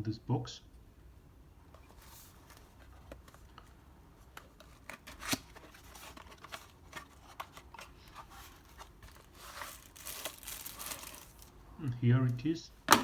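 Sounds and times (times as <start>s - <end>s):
cardboard box packaging handled: 1.8s - 11.5s.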